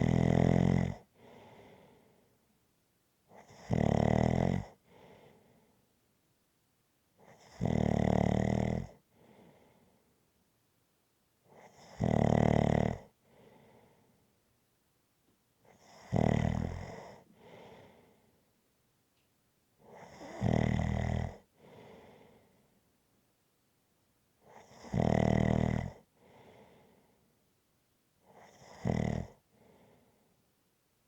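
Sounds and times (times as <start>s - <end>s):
person snoring: 0.0s - 1.0s, 3.4s - 4.8s, 11.6s - 13.1s, 20.0s - 21.4s, 24.6s - 26.0s, 28.4s - 29.4s
soft breath: 1.1s - 2.4s, 4.8s - 5.9s, 9.1s - 10.2s, 13.2s - 14.4s, 17.0s - 18.5s, 21.5s - 22.9s, 26.1s - 27.4s, 29.4s - 30.5s.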